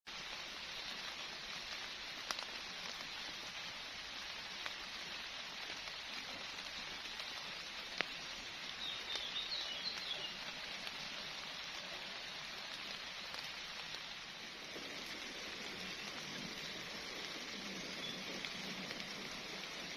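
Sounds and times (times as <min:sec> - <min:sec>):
rain drop strikes: 0:00.1 - 0:19.9
rain falling: 0:00.1 - 0:19.9
bird chirping: 0:08.8 - 0:10.6, 0:15.7 - 0:18.9.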